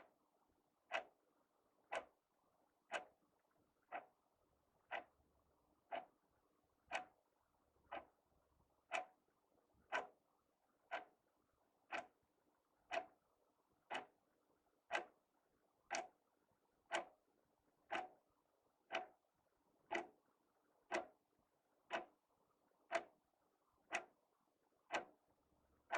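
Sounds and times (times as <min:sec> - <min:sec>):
wall clock ticking: 0:00.9 - 0:01.2, 0:01.9 - 0:02.2, 0:02.9 - 0:03.2, 0:03.9 - 0:04.1, 0:04.9 - 0:05.1, 0:05.9 - 0:06.1, 0:06.9 - 0:07.2, 0:07.9 - 0:08.1, 0:08.9 - 0:09.2, 0:09.9 - 0:10.2, 0:10.9 - 0:11.2, 0:11.9 - 0:12.2, 0:12.9 - 0:13.2, 0:13.9 - 0:14.2, 0:14.9 - 0:15.2, 0:15.9 - 0:16.1, 0:16.9 - 0:17.2, 0:17.9 - 0:18.2, 0:18.9 - 0:19.2, 0:19.9 - 0:20.2, 0:20.9 - 0:21.2, 0:21.9 - 0:22.2, 0:22.9 - 0:23.2, 0:23.9 - 0:24.2, 0:24.9 - 0:25.2.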